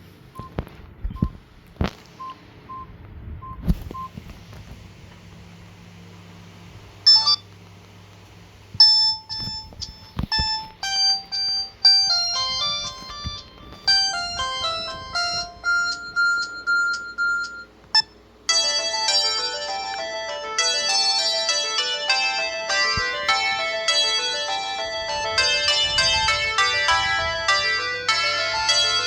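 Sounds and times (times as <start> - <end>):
electronic ringtone melody: 7.1 - 7.4, 8.8 - 29.0
short phone beep: 7.1 - 7.4.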